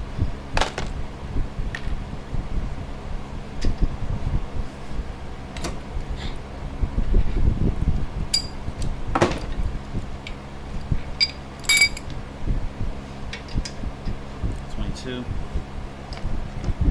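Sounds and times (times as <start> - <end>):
fan humming: 0.0 - 16.9
metal tools clinking and knocking: 1.8 - 2.1, 8.4 - 8.6, 11.2 - 12.2.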